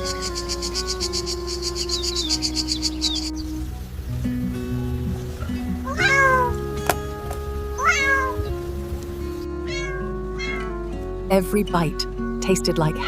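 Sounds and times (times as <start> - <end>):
background music: 0.0 - 13.0
cat meowing: 5.9 - 6.6, 7.8 - 8.4, 9.6 - 10.8.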